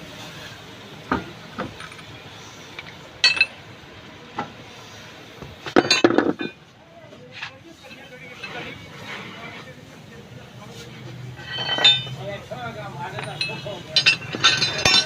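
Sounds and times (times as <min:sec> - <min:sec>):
metal tools clinking: 0:01.7 - 0:02.2, 0:02.8 - 0:03.6, 0:05.7 - 0:06.6, 0:07.8 - 0:08.8, 0:11.4 - 0:12.4, 0:13.0 - 0:15.0.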